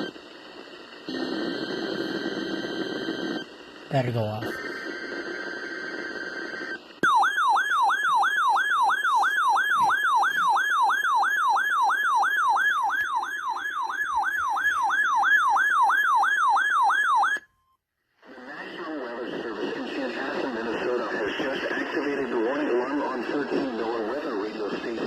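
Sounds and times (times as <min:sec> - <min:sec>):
weather radio siren alarm: 0:01.1 - 0:17.5.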